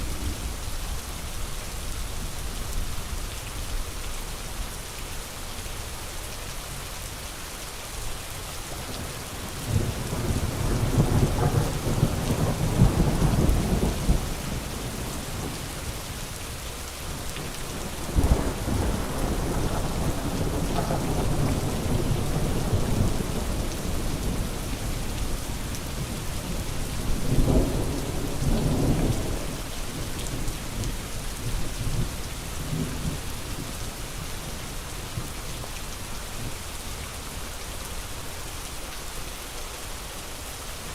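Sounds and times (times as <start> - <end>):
steady rain: 0.0 - 40.9
rolling thunder: 9.7 - 15.6.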